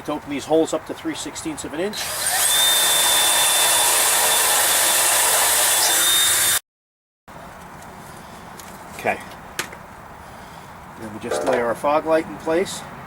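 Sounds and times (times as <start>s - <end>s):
electric drill whining: 2.0s - 6.6s.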